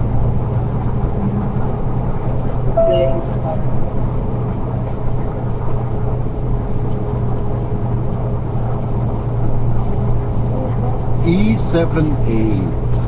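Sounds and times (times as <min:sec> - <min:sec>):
truck diesel engine droning: 0:07.1 - 0:13.0.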